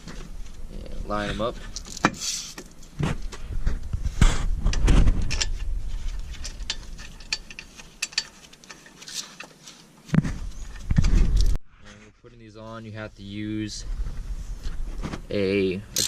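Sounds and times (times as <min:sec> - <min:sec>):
metallic clicks and knocks: 0:04.7 - 0:09.7.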